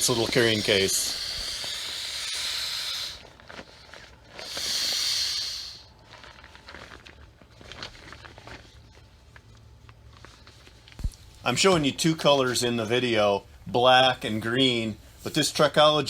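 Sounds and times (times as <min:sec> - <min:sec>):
air hissing out of valve: 0:00.0 - 0:03.3, 0:04.4 - 0:05.9
fabric crinkling and rustling: 0:03.2 - 0:04.4, 0:05.9 - 0:11.8.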